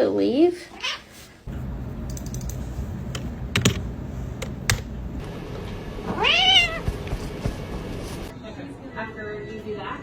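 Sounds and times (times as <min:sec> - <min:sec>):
low steady hum: 0:01.5 - 0:06.1
cat meowing: 0:06.1 - 0:06.8.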